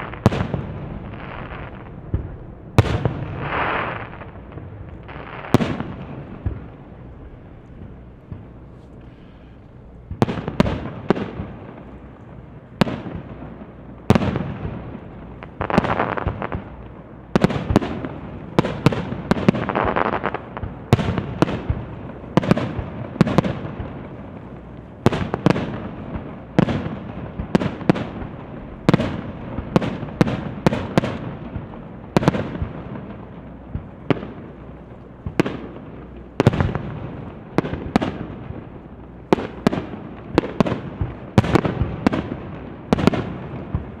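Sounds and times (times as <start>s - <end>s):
fireworks bursting with echoing bangs: 0.0s - 44.0s.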